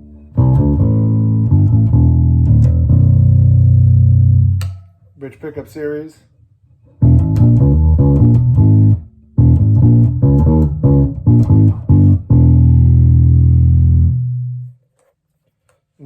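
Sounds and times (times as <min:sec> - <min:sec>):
bass guitar plucked riff: 0:00.0 - 0:04.8, 0:06.9 - 0:14.8.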